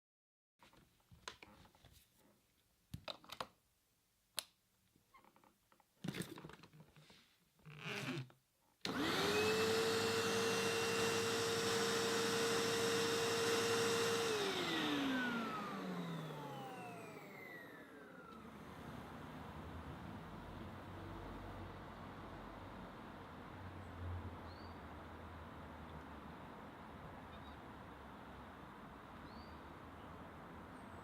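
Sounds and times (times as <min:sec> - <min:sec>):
vacuum cleaner running: 0:08.9 - 0:20.1.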